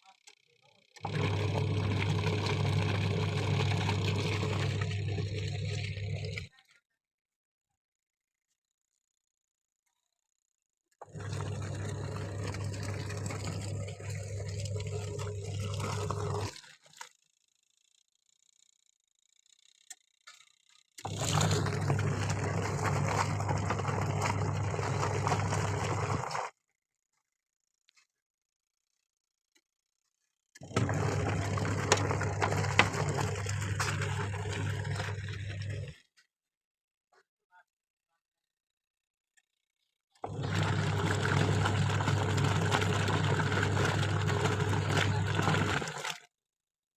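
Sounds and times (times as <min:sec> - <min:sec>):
washing machine motor hum: 0:00.0 - 0:06.5, 0:11.0 - 0:17.1, 0:19.8 - 0:26.5, 0:30.6 - 0:36.0, 0:40.2 - 0:46.3
water churning and sloshing: 0:01.0 - 0:06.5, 0:11.0 - 0:17.2, 0:21.1 - 0:26.5, 0:30.6 - 0:35.9, 0:40.2 - 0:46.3.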